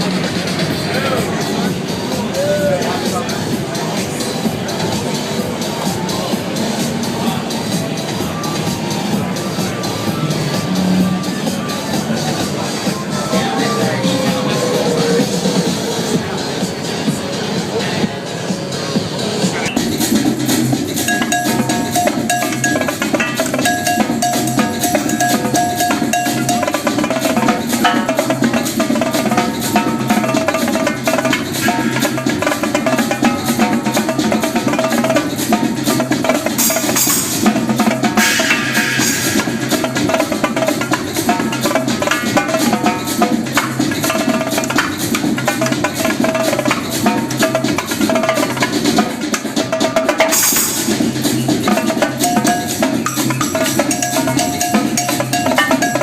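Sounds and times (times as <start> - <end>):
drum kit playing: 0.0 - 17.8, 19.0 - 56.0
electronic dance music: 0.0 - 56.0
cymbal crashes: 38.1 - 43.8.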